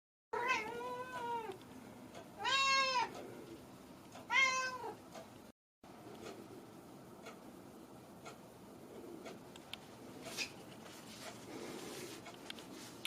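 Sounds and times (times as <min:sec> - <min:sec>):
cat meowing: 0:00.4 - 0:01.6, 0:02.4 - 0:03.2, 0:04.3 - 0:05.0.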